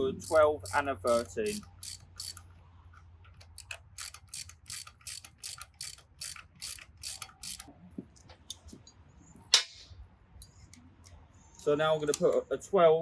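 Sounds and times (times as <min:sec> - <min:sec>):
ratchet wrench clicking: 0:00.0 - 0:02.5, 0:03.3 - 0:07.7.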